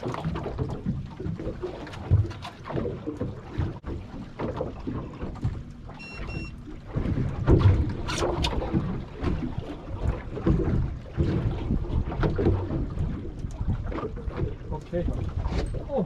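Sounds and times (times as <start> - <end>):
water noise: 0.0 - 16.0
short electronic beeps: 6.0 - 6.6
wind rumbling on microphone: 6.3 - 16.0.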